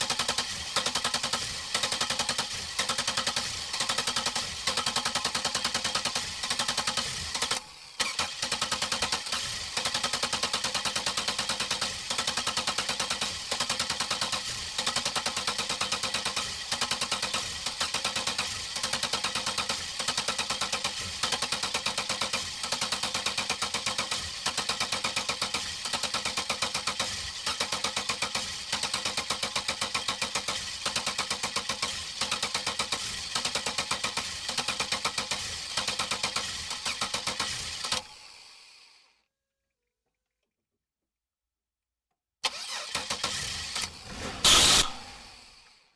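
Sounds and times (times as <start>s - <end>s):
car starter cranking engine: 0.1s - 12.7s, 42.4s - 45.9s
car starter cranking: 7.3s - 9.9s, 42.4s - 45.8s.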